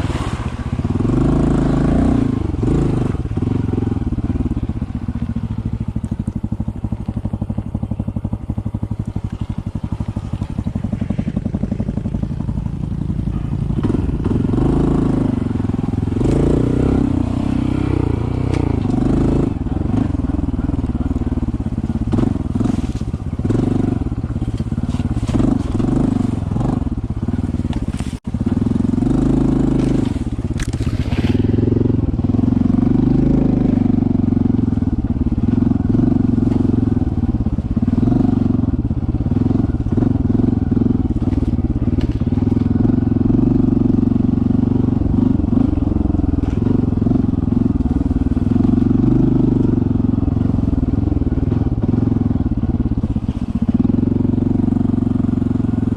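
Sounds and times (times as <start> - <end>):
motorcycle engine running: 0.0 - 55.9.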